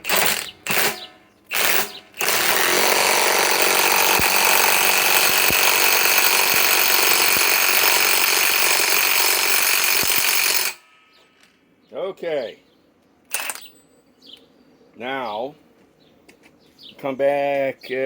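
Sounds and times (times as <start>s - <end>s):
impact wrench hammering: 0.0s - 10.8s.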